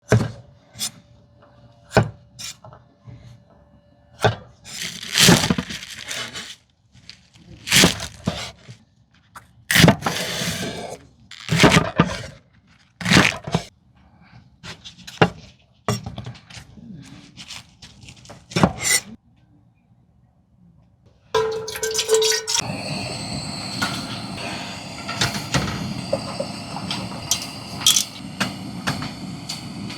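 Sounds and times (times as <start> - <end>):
short scraping and rustling: 4.7 - 8.8, 9.7 - 13.7.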